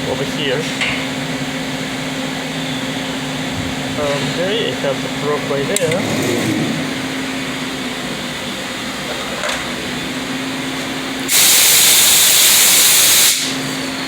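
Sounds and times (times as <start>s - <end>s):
machine humming: 0.0s - 11.3s
compressed air hissing: 11.3s - 13.6s.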